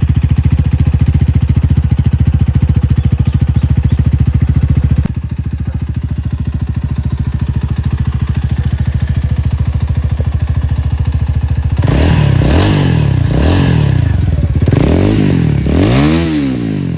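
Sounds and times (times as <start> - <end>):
motorcycle engine idling and revving: 0.0 - 16.9.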